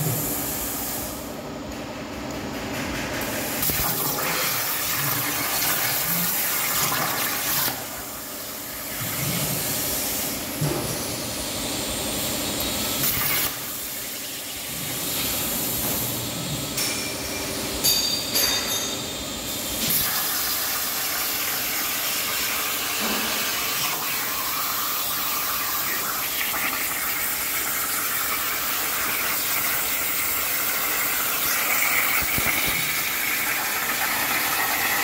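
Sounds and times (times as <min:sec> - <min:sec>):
plasma cutter hissing: 0:03.5 - 0:10.4, 0:13.0 - 0:16.1, 0:19.6 - 0:35.0.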